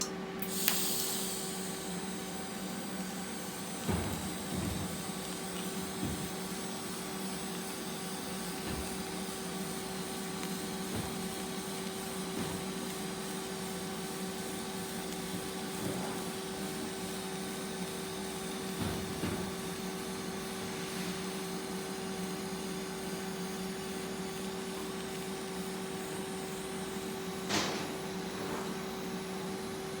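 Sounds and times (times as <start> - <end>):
even hum: 0.0 - 19.8
welding arc buzzing hiss: 0.0 - 30.0.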